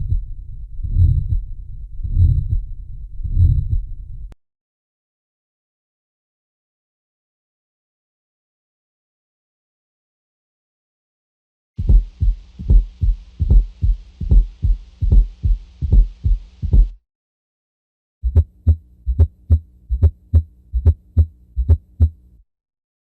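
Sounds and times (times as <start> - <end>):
heartbeat through stethoscope: 0.0 - 4.4, 11.8 - 17.0, 18.2 - 22.2
steady hum: 11.8 - 17.0.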